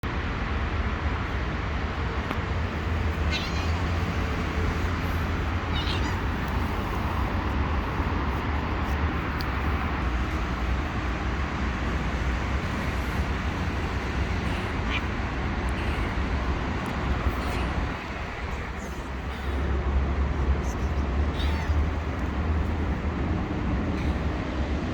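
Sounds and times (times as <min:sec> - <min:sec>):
traffic rumble: 0:00.0 - 0:24.9
cat meowing: 0:03.1 - 0:08.4, 0:14.4 - 0:16.2, 0:20.6 - 0:22.0.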